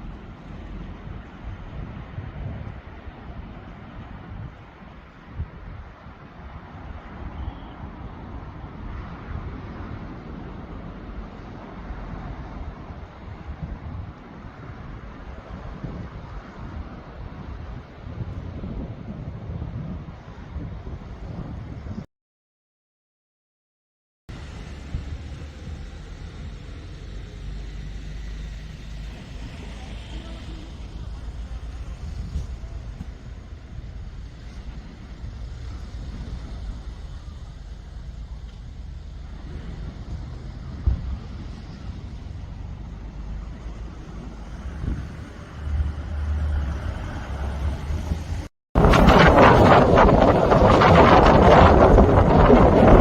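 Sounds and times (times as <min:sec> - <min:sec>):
wind on microphone: 0:00.0 - 0:22.1, 0:24.4 - 0:53.0
sea surf rushing: 0:27.7 - 0:53.0.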